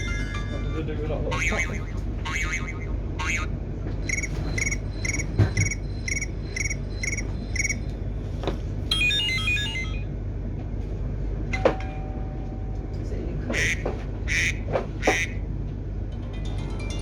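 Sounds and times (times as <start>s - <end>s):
quick electronic notes: 1.4s - 7.8s
electronic alert beeps: 4.0s - 7.9s, 8.9s - 10.1s.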